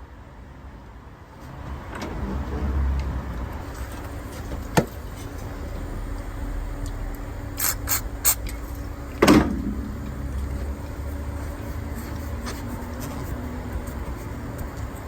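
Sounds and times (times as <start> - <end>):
car engine idling: 1.5 - 15.0
loud thump: 9.2 - 10.8.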